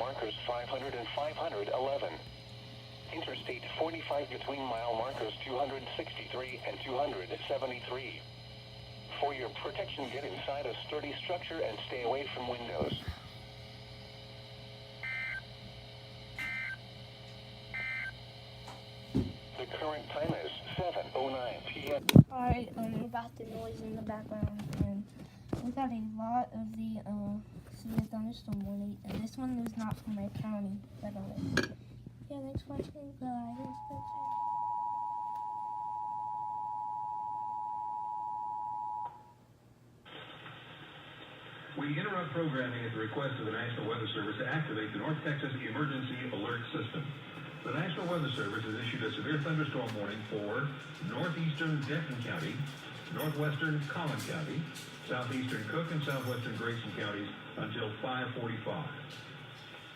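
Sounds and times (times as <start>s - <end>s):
faint steady hum: 0.0s - 59.9s
digital data tone bursts: 15.0s - 15.5s, 16.4s - 16.8s, 17.7s - 18.2s
two-tone alert tone: 17.8s - 18.1s.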